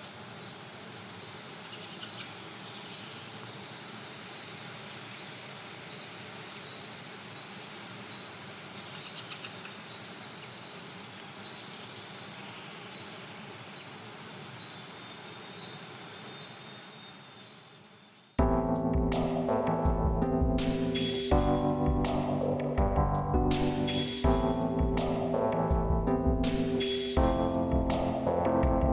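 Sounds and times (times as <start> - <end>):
small birds chirping and singing: 0.0 - 19.8
background hiss: 0.0 - 28.5.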